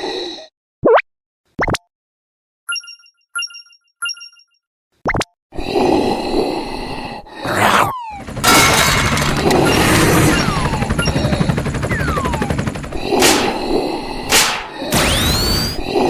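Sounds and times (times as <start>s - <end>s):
rattling run of clicks: 8.2s - 11.1s.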